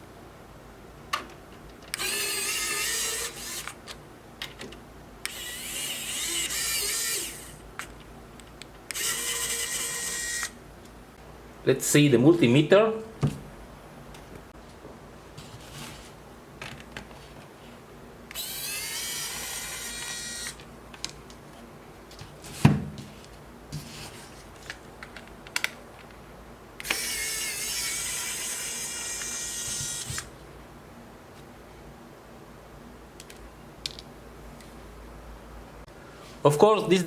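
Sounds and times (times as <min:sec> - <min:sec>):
electric screwdriver whine: 0:02.0 - 0:03.8, 0:05.3 - 0:07.6, 0:08.9 - 0:10.6, 0:18.3 - 0:20.6, 0:26.8 - 0:30.3.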